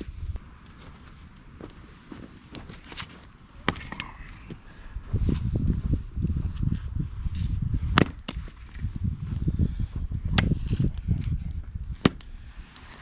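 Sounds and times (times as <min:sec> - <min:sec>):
axe chopping wood: 0:03.6 - 0:04.2, 0:07.9 - 0:08.8, 0:10.3 - 0:11.0, 0:11.9 - 0:12.3.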